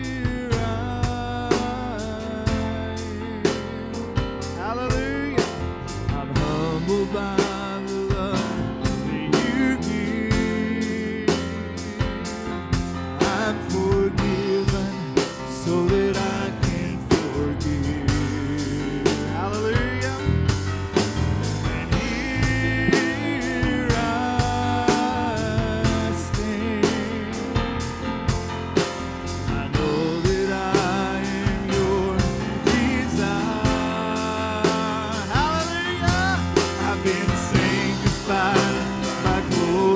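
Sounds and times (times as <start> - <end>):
band playing instrumental: 0.0 - 39.9
steady drum beat: 0.0 - 39.9.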